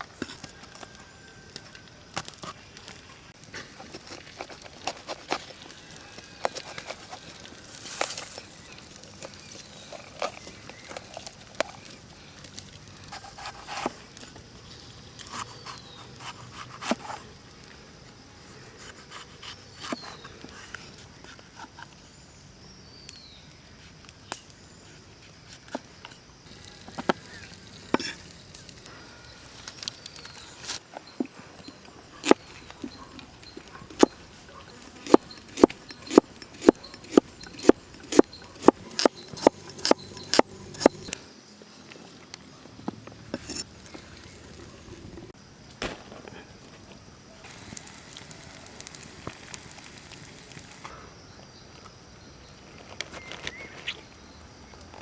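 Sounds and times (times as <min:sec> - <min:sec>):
faint hiss: 0:47.3 - 0:51.2.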